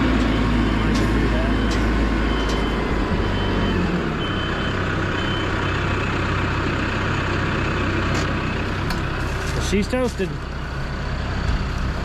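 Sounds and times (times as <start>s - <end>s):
reversing alarm beeping: 0.0s - 6.5s
vehicle engine running: 0.0s - 12.0s.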